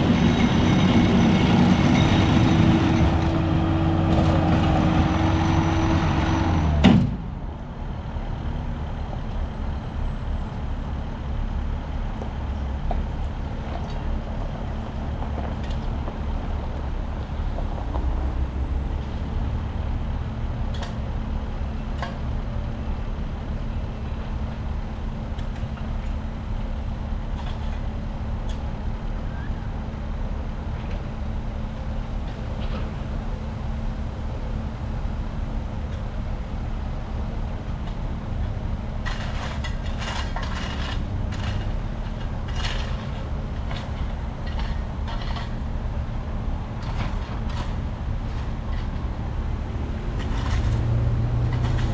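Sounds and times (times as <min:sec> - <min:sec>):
louder droning engine: 0:00.0 - 0:11.7
vehicle engine low rumble: 0:00.0 - 0:51.9.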